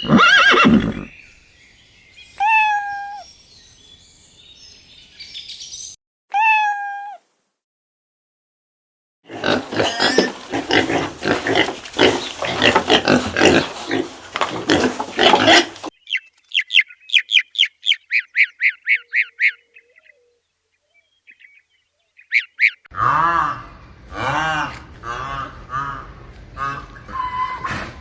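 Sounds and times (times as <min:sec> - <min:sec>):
pig squealing and grunting: 0:00.0 - 0:01.1, 0:09.3 - 0:15.9, 0:22.9 - 0:28.0
high bird chirps: 0:00.0 - 0:07.1.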